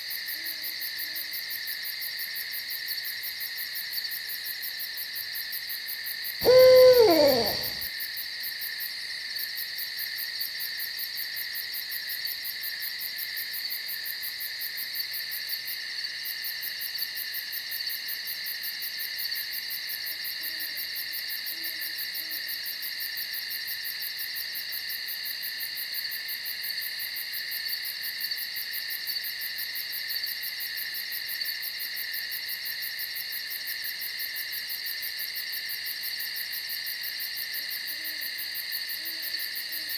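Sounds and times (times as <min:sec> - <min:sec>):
crickets and insects trilling: 0:06.4 - 0:07.8
faint low call: 0:06.4 - 0:07.8
owl calling: 0:06.4 - 0:07.8.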